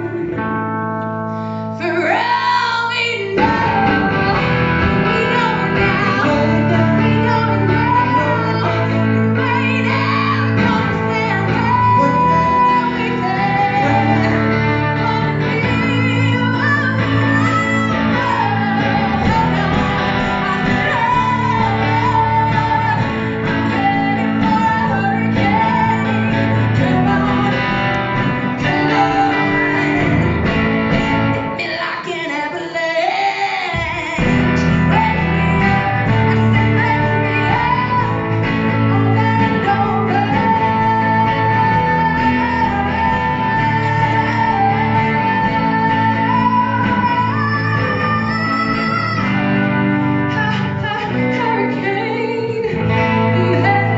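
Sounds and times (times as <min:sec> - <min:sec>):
woman singing: 0:00.0 - 0:00.9, 0:01.7 - 0:53.9
band playing: 0:03.4 - 0:31.6.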